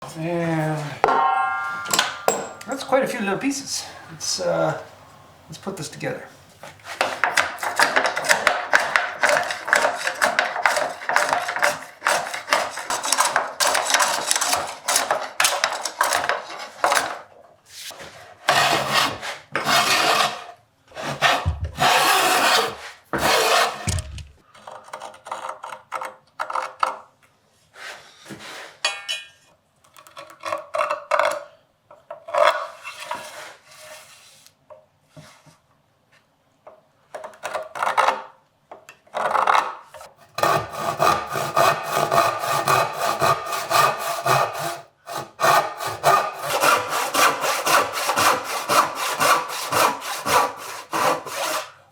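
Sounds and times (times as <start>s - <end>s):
handling noises: 23.9s - 24.4s.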